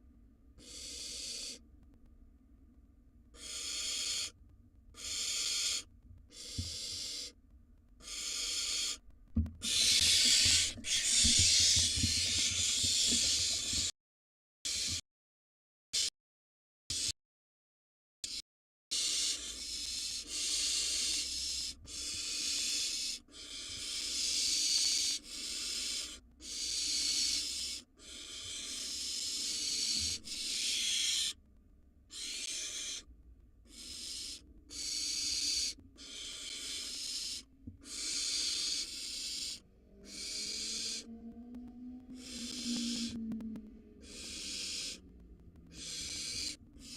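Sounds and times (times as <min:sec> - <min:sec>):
owl nestlings hissing: 0:00.6 - 0:01.6, 0:03.3 - 0:07.4, 0:08.0 - 0:09.0, 0:09.6 - 0:13.9, 0:14.7 - 0:15.0, 0:18.3 - 0:31.4, 0:32.1 - 0:41.1, 0:42.2 - 0:43.2, 0:44.0 - 0:45.1, 0:45.7 - 0:46.9.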